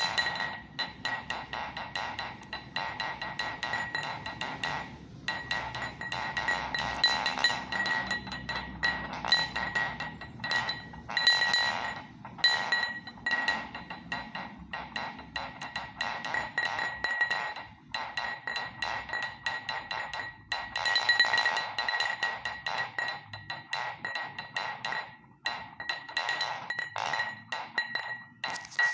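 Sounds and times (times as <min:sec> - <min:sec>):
high ringing tone: 0:00.0 - 0:01.0, 0:28.5 - 0:28.9
irregular clinking and ticking: 0:00.0 - 0:28.9.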